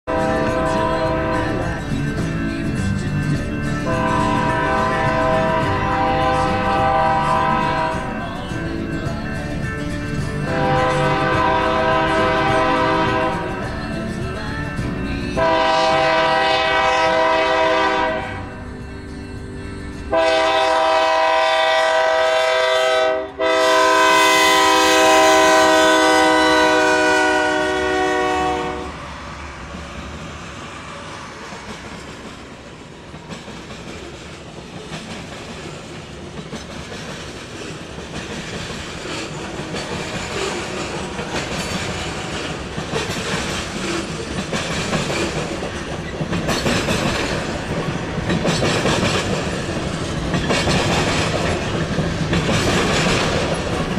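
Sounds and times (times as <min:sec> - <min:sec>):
train horn multi-tone chord: 0:00.1 - 0:01.7, 0:03.8 - 0:08.2, 0:10.4 - 0:13.7, 0:15.3 - 0:18.6, 0:20.1 - 0:29.1
train wheels clacking over rail joints: 0:31.3 - 0:53.9.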